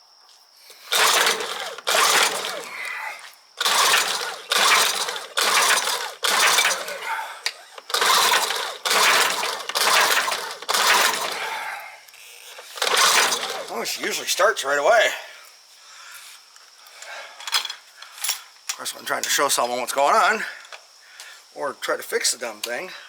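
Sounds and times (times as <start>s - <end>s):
outboard motor pull-start cranking: 0.9s - 2.8s, 3.6s - 11.6s, 12.6s - 14.0s.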